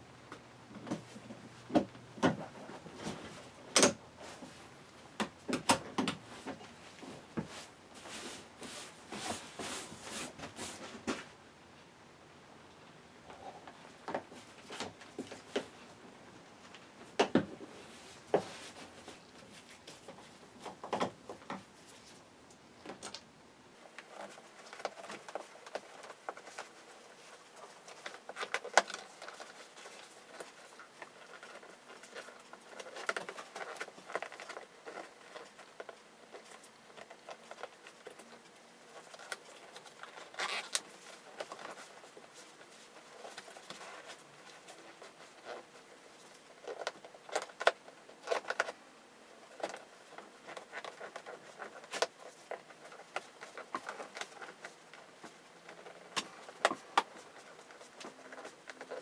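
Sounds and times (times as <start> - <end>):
hands clicking and rustling: 23.8 - 59.0.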